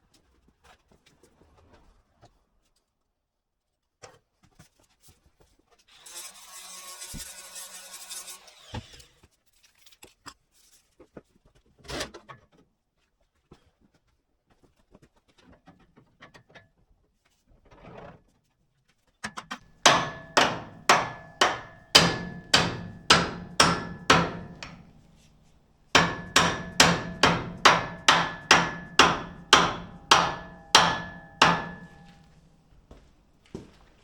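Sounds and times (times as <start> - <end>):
hammer striking steel: 19.8 - 25.4, 26.0 - 32.5.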